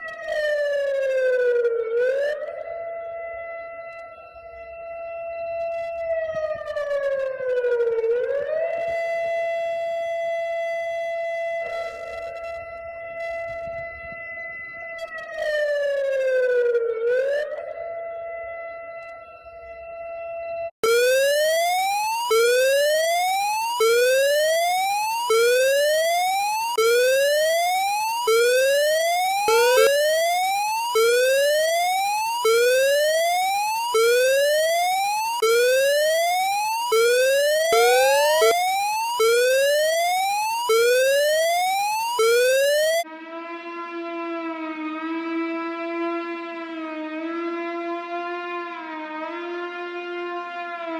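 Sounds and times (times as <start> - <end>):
electronic whoop alarm tone: 20.8 - 43.0
wavering electronic tone: 20.8 - 43.0.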